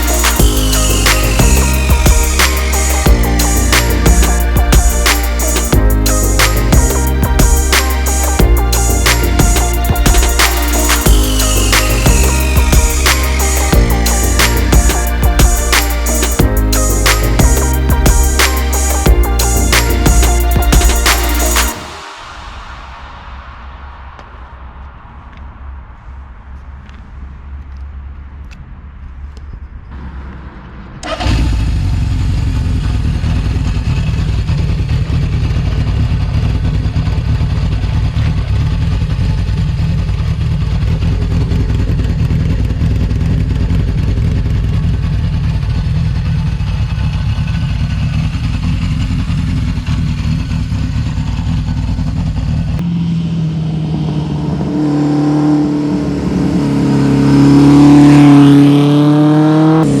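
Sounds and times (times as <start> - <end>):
motorcycle engine revving: 30.0 - 60.0.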